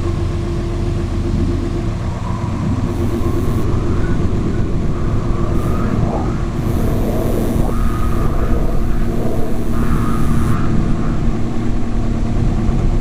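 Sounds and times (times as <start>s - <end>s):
low rumble: 0.0s - 13.0s
faint wavering high tones: 1.9s - 11.4s.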